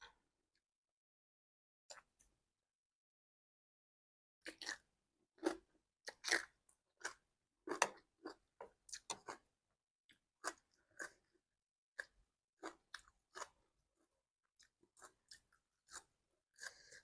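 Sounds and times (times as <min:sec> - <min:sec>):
person chewing crunchy food: 0:04.4 - 0:09.5, 0:10.1 - 0:11.4, 0:12.0 - 0:17.0.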